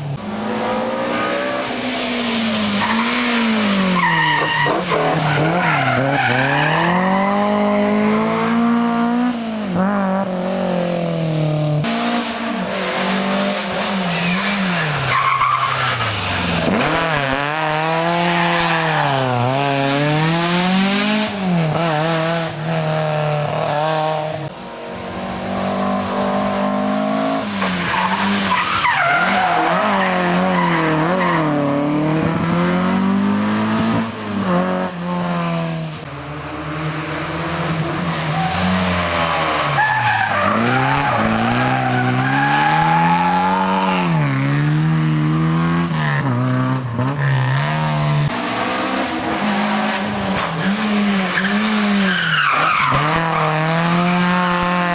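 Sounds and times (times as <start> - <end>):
rally car engine revving: 0.0 - 54.9
tyre squeal: 2.8 - 7.6.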